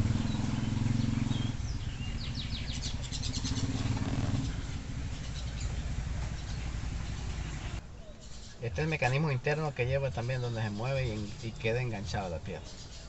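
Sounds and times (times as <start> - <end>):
motor vehicle engine drone: 0.0 - 7.8
bird chirping: 0.0 - 13.0.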